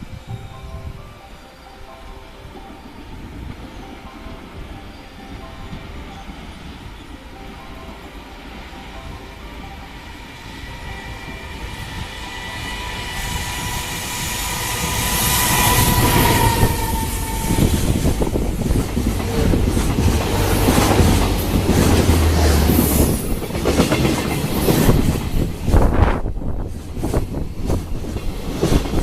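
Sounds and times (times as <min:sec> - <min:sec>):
electric locomotive whine: 0:00.0 - 0:29.0
heavy train rumble: 0:00.0 - 0:29.0.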